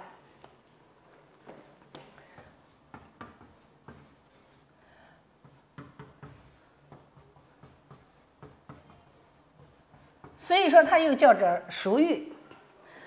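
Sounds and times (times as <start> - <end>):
pen scratching on paper: 2.4 - 4.7, 5.4 - 10.5.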